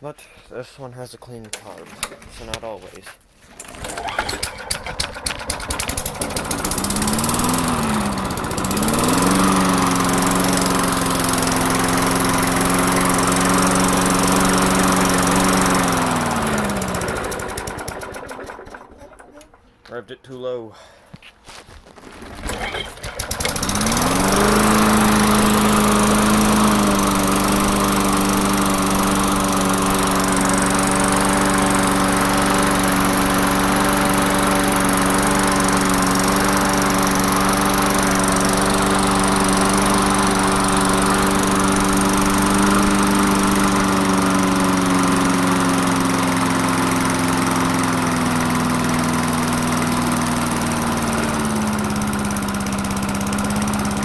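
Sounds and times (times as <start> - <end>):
lawn mower engine running: 1.5 - 2.4, 3.5 - 19.8, 21.9 - 54.0.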